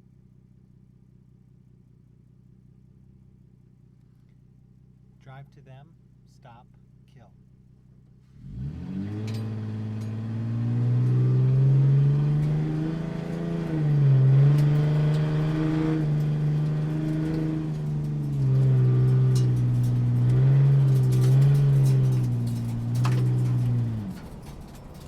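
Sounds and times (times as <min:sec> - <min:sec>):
motorcycle engine revving: 0:08.4 - 0:25.0.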